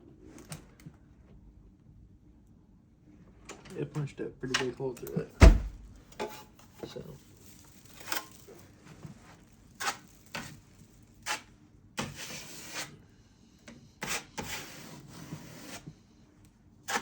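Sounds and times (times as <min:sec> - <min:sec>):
drywall knife scraping: 0:09.8 - 0:10.6, 0:11.2 - 0:13.1, 0:14.0 - 0:16.0.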